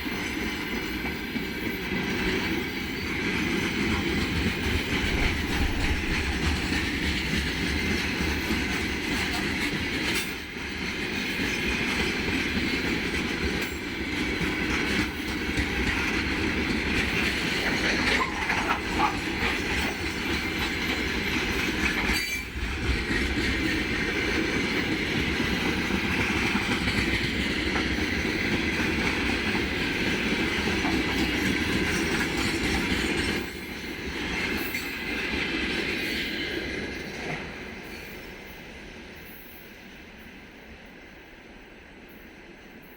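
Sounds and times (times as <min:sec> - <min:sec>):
train wheels rumbling on rails: 0:00.0 - 0:42.9
wheels clattering over rail joints: 0:02.4 - 0:10.4, 0:11.4 - 0:33.6.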